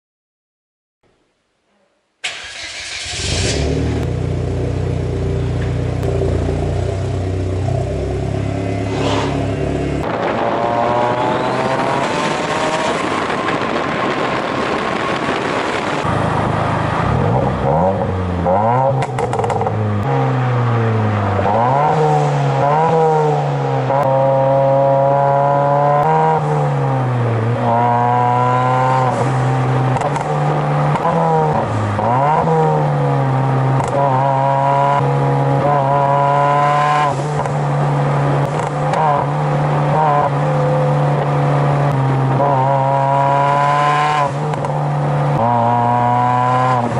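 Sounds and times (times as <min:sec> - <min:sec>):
car engine idling and revving: 0:02.3 - 0:46.9
exhaust crackles and pops: 0:09.9 - 0:16.6, 0:18.9 - 0:19.8, 0:29.9 - 0:32.1, 0:37.3 - 0:39.6.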